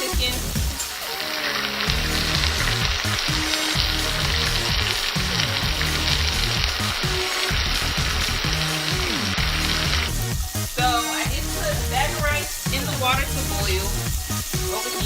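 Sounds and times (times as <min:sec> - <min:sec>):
steaks sizzling in a pan: 0:01.0 - 0:11.6.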